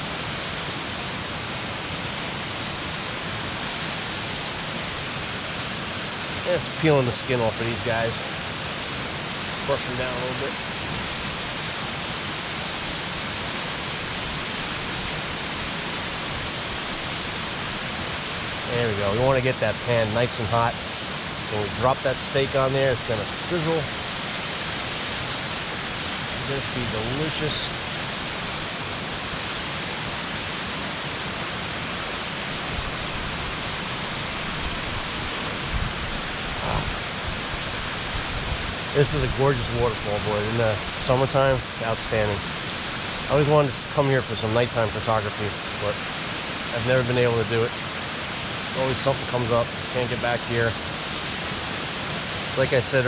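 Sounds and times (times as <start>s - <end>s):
waterfall rushing: 0.0s - 53.0s.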